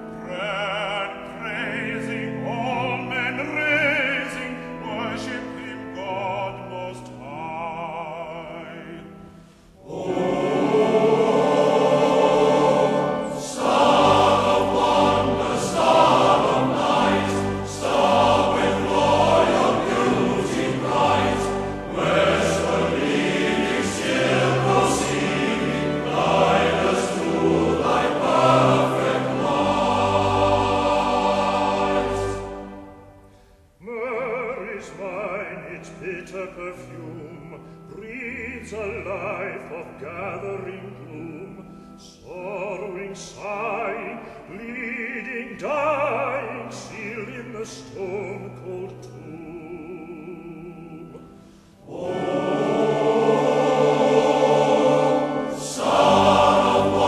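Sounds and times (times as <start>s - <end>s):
choir singing: 9.8s - 33.5s, 42.3s - 57.0s
low instrumental accompaniment: 9.8s - 33.6s.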